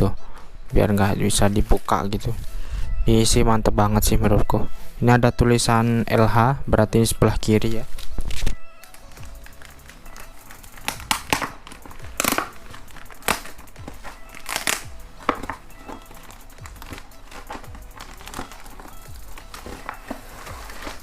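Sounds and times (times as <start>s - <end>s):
quiet background music: 0.0s - 21.0s
plastic packaging crinkling: 7.8s - 21.0s.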